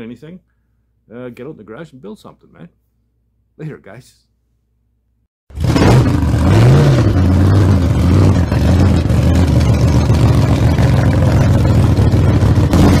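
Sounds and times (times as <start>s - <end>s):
engine revving and running: 5.5s - 13.0s.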